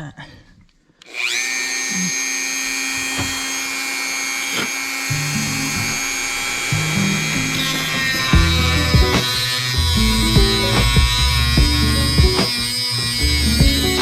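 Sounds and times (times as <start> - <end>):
rotary tool whining: 1.0 - 14.0
background music: 6.8 - 14.0.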